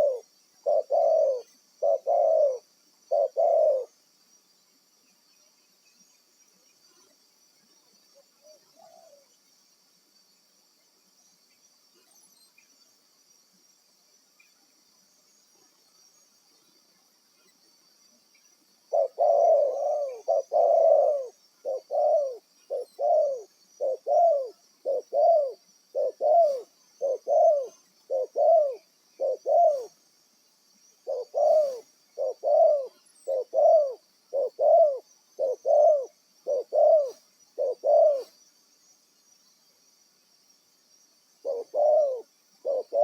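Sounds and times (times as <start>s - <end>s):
dove cooing: 0.0s - 3.9s, 8.4s - 9.2s, 18.9s - 29.9s, 31.0s - 38.3s, 41.4s - 43.0s
high insect hiss: 0.0s - 43.0s.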